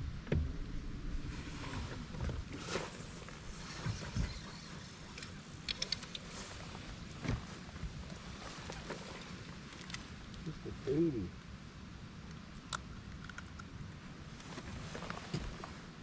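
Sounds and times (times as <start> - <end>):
low outdoor rumble: 0.0 - 16.0.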